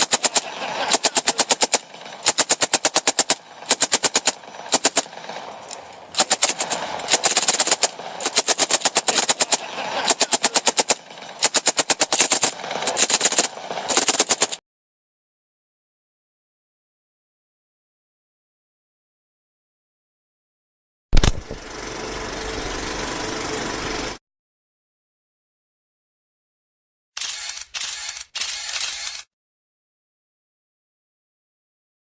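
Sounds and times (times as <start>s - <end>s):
machine gun firing bursts: 0.0s - 14.6s.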